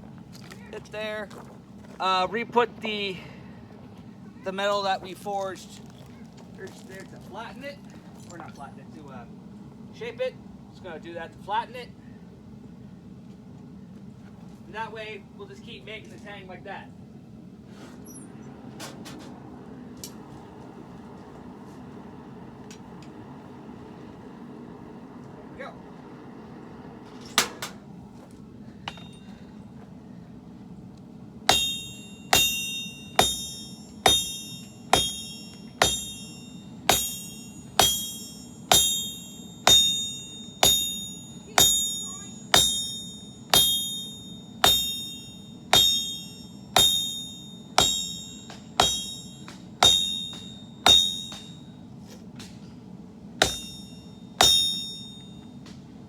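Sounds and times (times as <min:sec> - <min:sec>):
hammer striking metal on anvil: 0:28.8 - 0:29.4, 0:31.5 - 0:51.7, 0:53.4 - 0:55.5.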